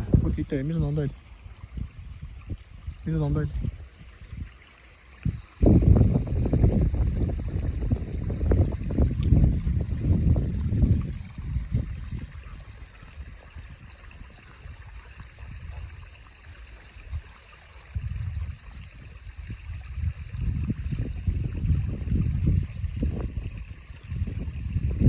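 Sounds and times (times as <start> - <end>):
low rumbling: 0.0 - 4.5, 5.3 - 14.0.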